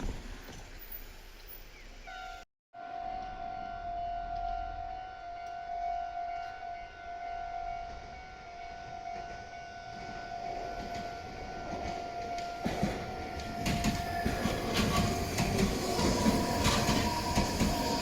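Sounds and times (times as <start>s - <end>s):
level-crossing warning bell: 2.1s - 18.0s
train rumble: 2.8s - 18.0s.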